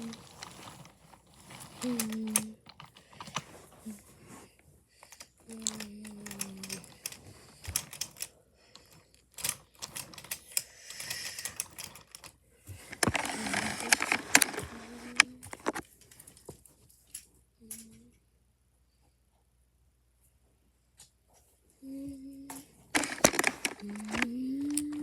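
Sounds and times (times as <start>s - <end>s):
wooden toy trains clacking: 0.0s - 4.0s, 5.1s - 16.0s, 22.9s - 25.0s.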